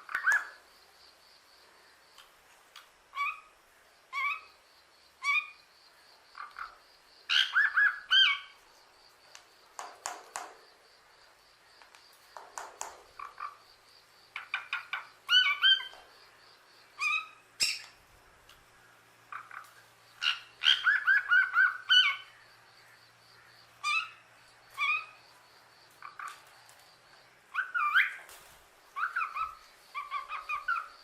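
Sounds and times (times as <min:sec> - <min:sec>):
parrot chirping: 0:03.1 - 0:03.5, 0:04.1 - 0:04.5, 0:14.4 - 0:16.0, 0:17.0 - 0:18.0, 0:19.3 - 0:22.3, 0:23.8 - 0:24.2, 0:24.8 - 0:25.2, 0:27.5 - 0:28.2, 0:29.0 - 0:31.0.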